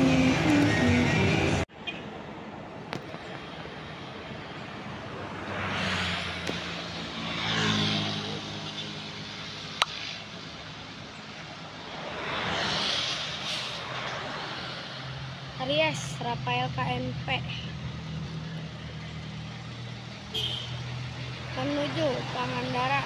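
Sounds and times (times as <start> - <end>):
vehicles passing by: 0.0 - 23.0.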